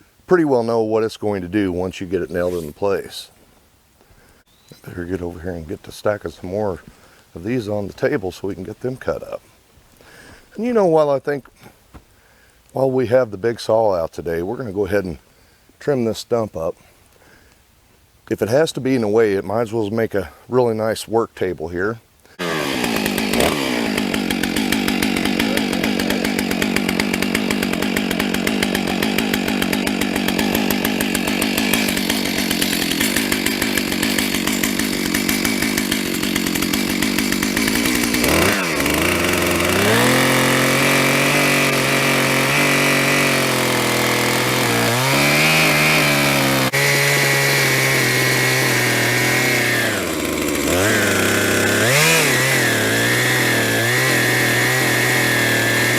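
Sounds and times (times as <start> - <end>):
chainsaw cutting wood: 2.0 - 3.2, 22.2 - 55.9.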